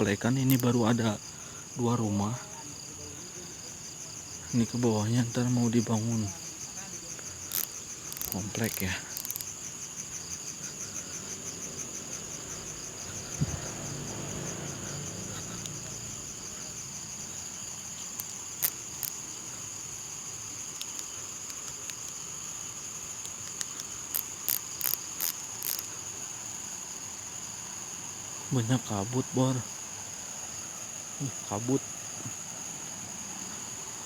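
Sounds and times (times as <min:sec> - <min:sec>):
insects trilling: 0:00.0 - 0:34.0
sharp clicks: 0:00.5 - 0:00.7, 0:07.5 - 0:09.5.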